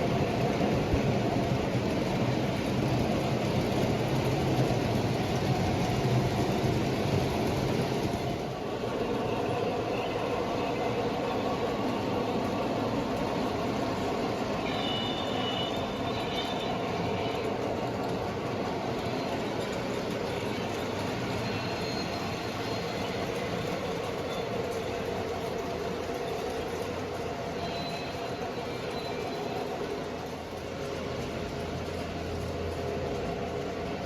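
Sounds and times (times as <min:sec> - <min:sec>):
model train rolling on track: 0:00.0 - 0:34.0
faint high wheel squeal: 0:13.4 - 0:18.1, 0:19.0 - 0:32.5.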